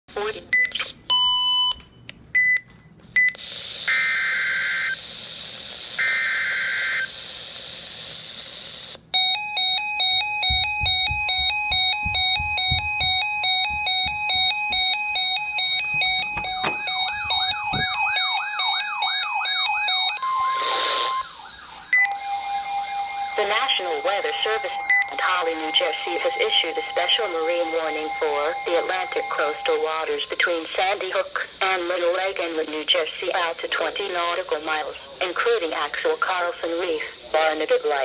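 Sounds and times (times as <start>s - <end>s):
stepped electronic beeping tones: 9.2s - 18.3s
radio static hiss: 30.4s - 38.0s.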